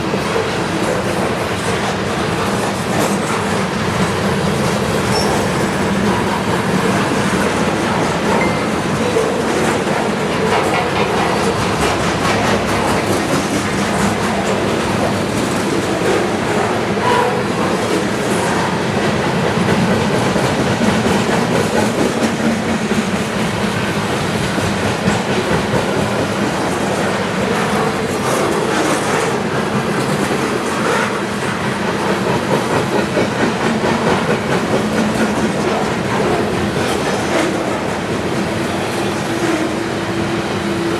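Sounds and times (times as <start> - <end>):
freight train wheels clacking: 0.0 - 40.9.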